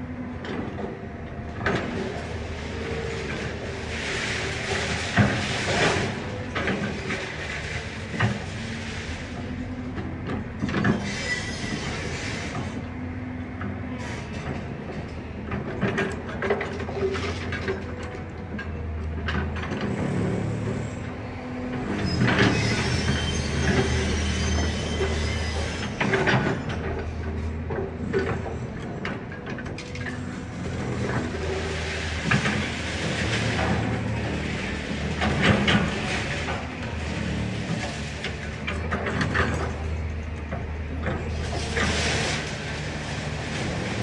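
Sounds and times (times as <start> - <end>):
high metallic screeching: 10.9 - 12.7, 21.9 - 26.2.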